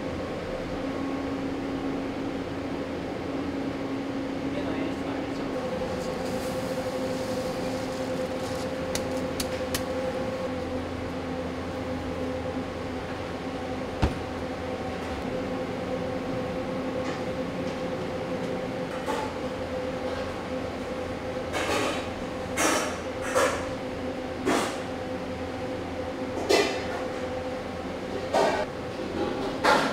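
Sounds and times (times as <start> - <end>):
stir-frying machine motor humming: 5.4 - 18.8.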